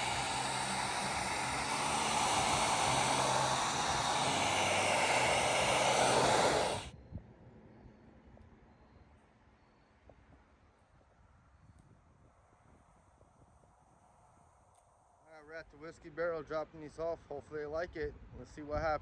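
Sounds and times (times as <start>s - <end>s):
heat gun fan blowing: 0.0s - 7.0s.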